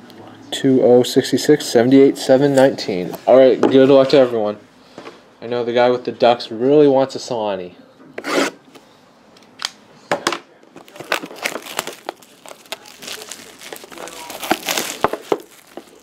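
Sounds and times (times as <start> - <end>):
packaging clicks and crackles: 10.8 - 16.0
plastic wrapping crinkling and tearing: 10.8 - 16.0.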